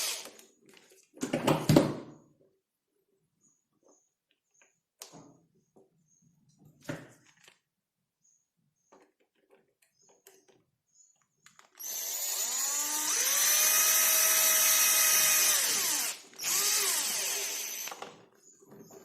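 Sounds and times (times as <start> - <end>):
electric drill whining: 0.0 - 0.4, 11.7 - 18.1.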